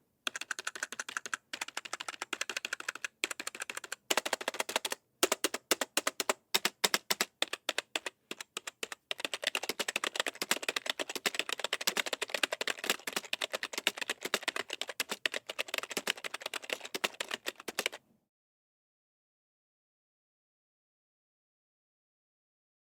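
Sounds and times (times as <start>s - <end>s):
typing on computer keyboard: 0.3s - 18.0s.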